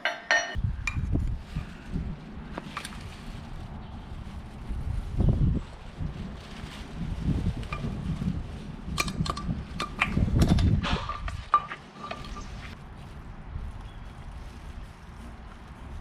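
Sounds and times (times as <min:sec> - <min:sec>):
metal tools clinking: 0:00.0 - 0:00.6.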